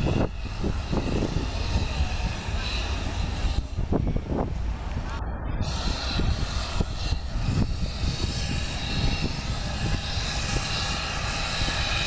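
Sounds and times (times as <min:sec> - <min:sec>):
jet engines running: 0:00.0 - 0:12.0.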